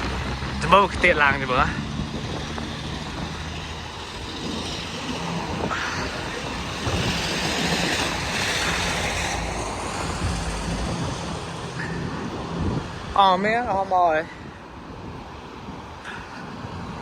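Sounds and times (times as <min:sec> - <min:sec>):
vehicle engine humming: 0:00.0 - 0:13.4
ocean surf: 0:00.0 - 0:17.0
wind on the microphone: 0:00.0 - 0:17.0.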